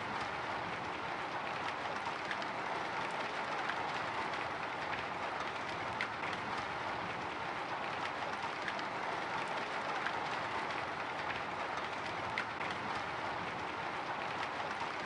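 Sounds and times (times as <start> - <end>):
soft raindrop ticks: 0.0 - 15.0.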